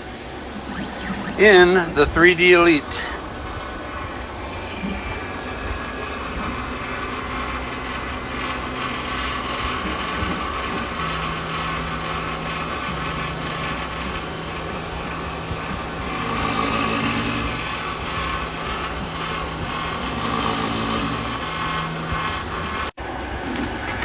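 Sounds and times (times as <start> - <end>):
high-pitched squeal: 0.0 - 11.2, 14.5 - 22.9.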